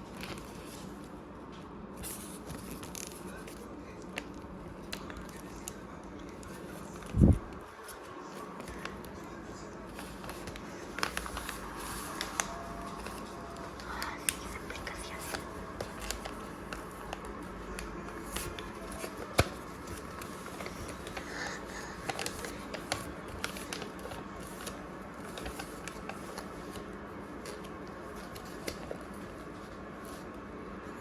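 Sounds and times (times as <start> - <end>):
paper crinkling and rustling: 0.0 - 31.0.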